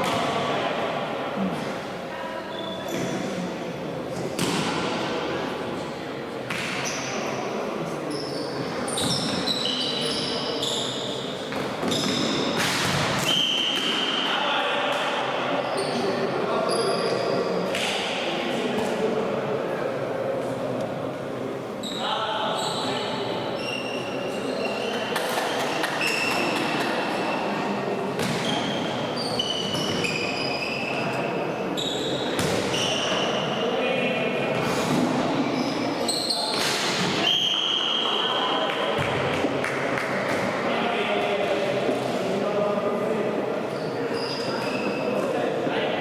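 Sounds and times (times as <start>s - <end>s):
echoing murmur of hall: 0.0s - 46.0s
sports shoes squeaking on floor: 2.5s - 3.3s, 6.5s - 7.4s, 8.1s - 14.1s, 15.6s - 17.6s, 21.8s - 27.4s, 28.2s - 33.6s, 35.5s - 36.6s, 43.7s - 45.2s
sneakers squeaking on court: 8.1s - 13.5s, 28.2s - 33.4s.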